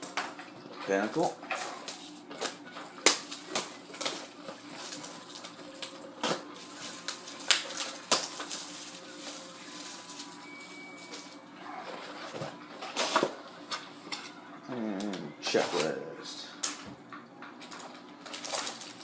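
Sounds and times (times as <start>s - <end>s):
plastic wrap crinkling: 0.9s - 13.9s, 17.7s - 19.0s.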